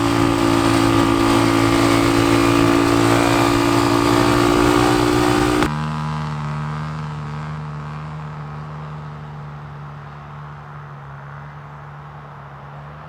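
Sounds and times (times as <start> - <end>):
dirt bike engine revving: 0.0 - 5.8.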